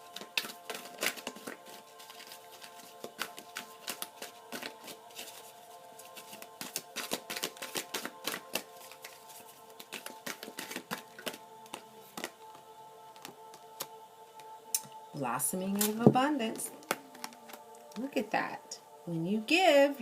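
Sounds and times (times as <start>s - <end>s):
tarot cards clicking and rustling: 0.0s - 14.5s, 15.8s - 18.0s
soft background music: 0.0s - 20.0s.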